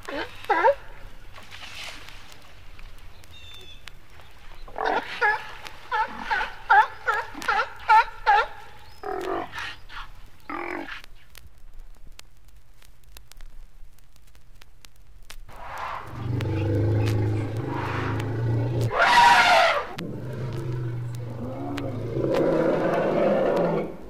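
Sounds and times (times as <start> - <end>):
record surface clicks: 8.8 - 19.1, 19.9 - 23.9
low hum: 15.5 - 19.1
sea lions barking: 15.8 - 24.0.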